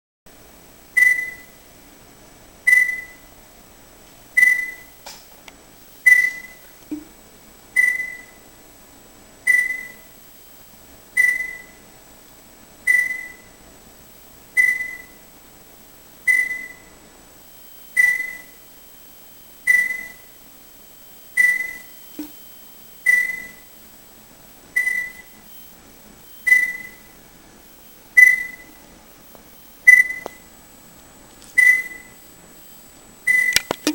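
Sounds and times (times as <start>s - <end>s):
speaker click with high ping: 33.3s - 33.9s.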